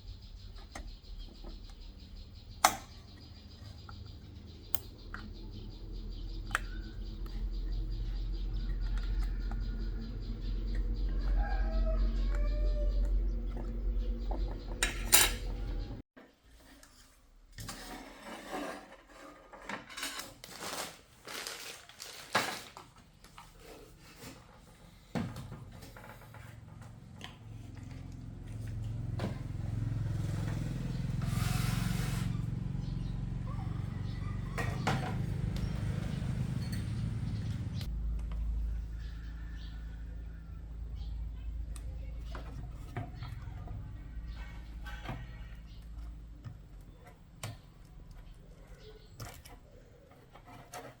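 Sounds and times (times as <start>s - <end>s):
metal tools clinking: 14.8s - 15.6s.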